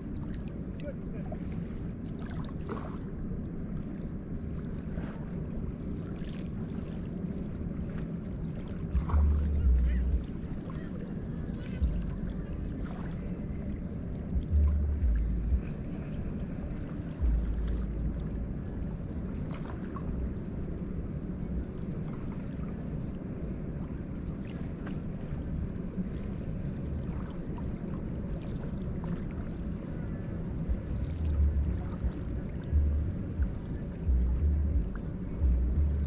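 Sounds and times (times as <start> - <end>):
river waves lapping: 0.0 - 36.0
wind rumbling on microphone: 0.0 - 36.0.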